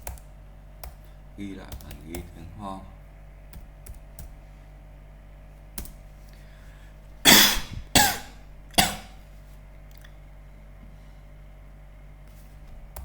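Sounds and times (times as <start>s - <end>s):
person coughing: 7.3s - 9.2s.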